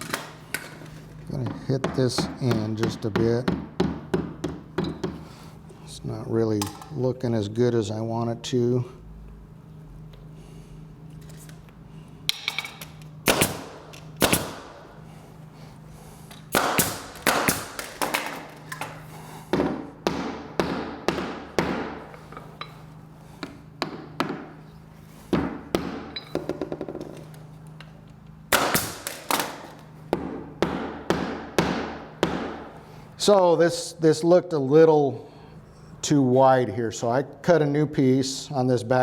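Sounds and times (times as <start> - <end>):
hammer knocking wooden trim: 1.4 - 5.3, 19.5 - 22.1, 25.3 - 27.1, 30.1 - 32.7.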